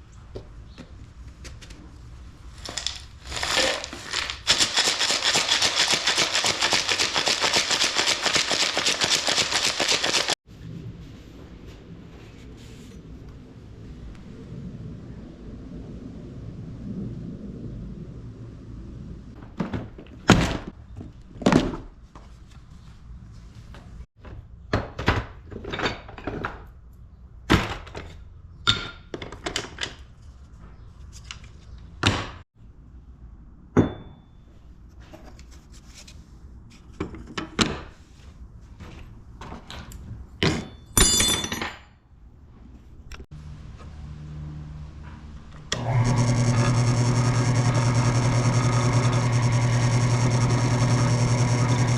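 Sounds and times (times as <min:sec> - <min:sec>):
rocks rattling in plastic pipe: 0:02.6 - 0:10.4.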